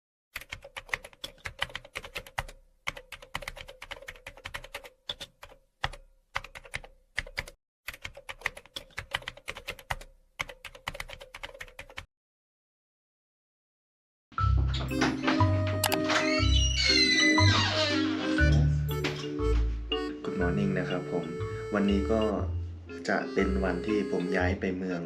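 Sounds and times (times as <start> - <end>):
typing on a keyboard: 0.4 - 12.1.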